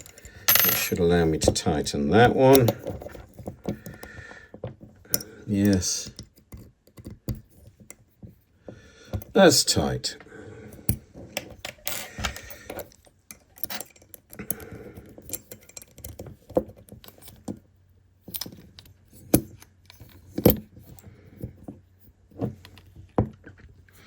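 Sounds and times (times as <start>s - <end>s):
metal parts clicking and jingling: 0.0s - 1.6s, 2.3s - 4.1s, 10.8s - 17.6s, 18.2s - 21.0s.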